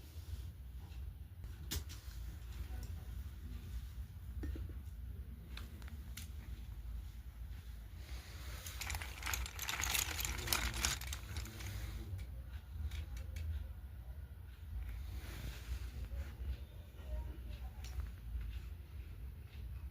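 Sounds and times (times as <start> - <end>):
crinkling and crackling: 7.6 - 13.5.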